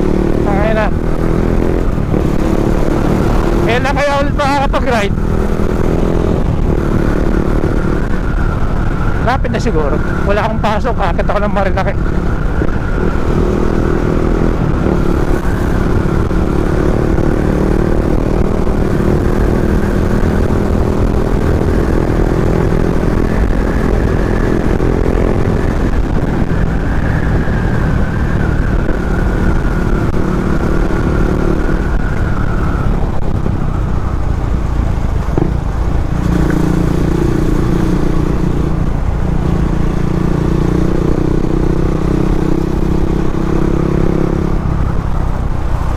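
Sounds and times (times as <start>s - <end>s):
motorcycle engine running: 0.0s - 45.9s
wind rumble: 0.0s - 45.9s.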